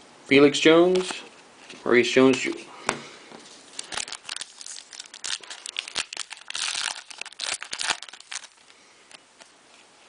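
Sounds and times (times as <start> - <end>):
wrapper crinkling and tearing: 3.6 - 8.7
cards clicking and crackling: 3.8 - 8.6.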